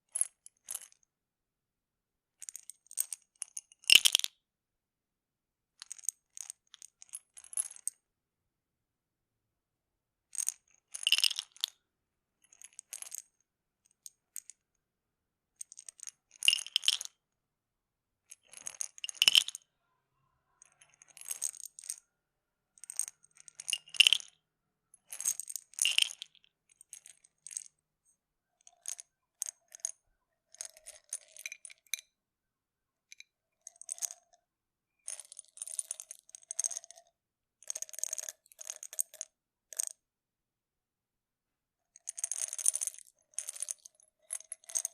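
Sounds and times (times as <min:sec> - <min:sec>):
pills rattling in plastic bottle: 0:25.1 - 0:27.7.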